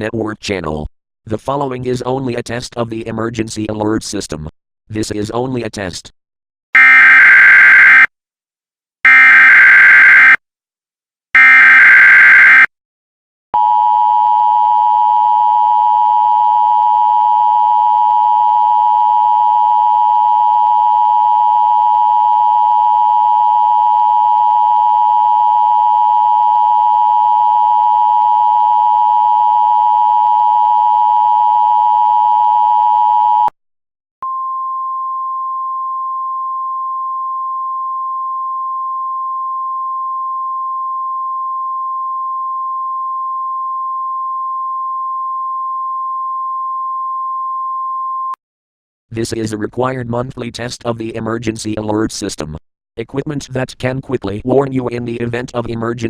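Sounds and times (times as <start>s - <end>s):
screeching data bursts: 6.8s - 8.1s, 9.1s - 10.4s, 11.4s - 12.7s
two-tone attention signal: 6.8s - 8.1s, 9.1s - 10.4s, 11.4s - 12.7s.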